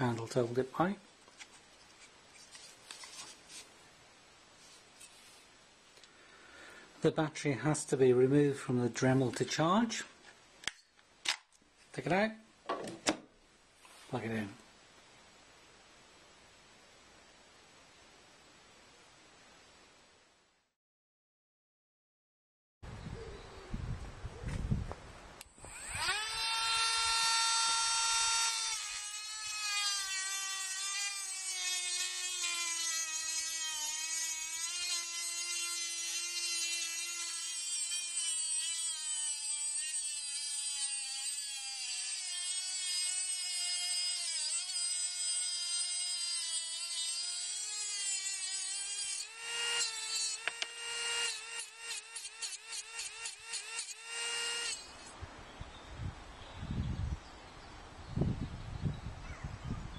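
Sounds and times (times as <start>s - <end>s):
rotary tool motor whining: 25.5s - 55.1s.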